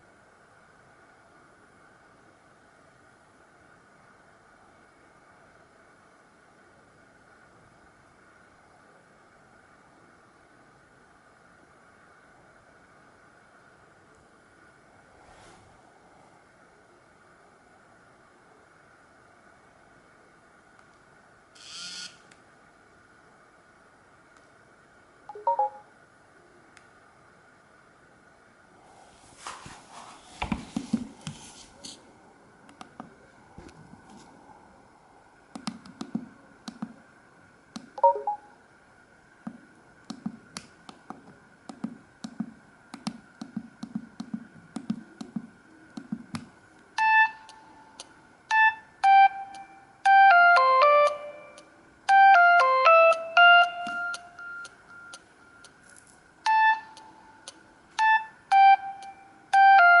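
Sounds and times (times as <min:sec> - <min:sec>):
synthesized phone ringtone: 0:25.3 - 0:25.9, 0:38.0 - 0:38.5, 0:50.1 - 0:55.1, 0:58.0 - 0:59.0, 0:59.6 - 1:00.0
clicks: 0:35.5 - 0:37.0.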